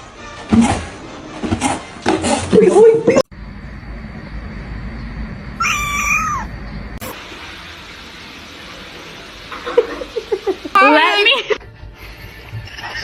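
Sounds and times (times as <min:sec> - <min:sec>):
cat meowing: 0:05.6 - 0:06.5.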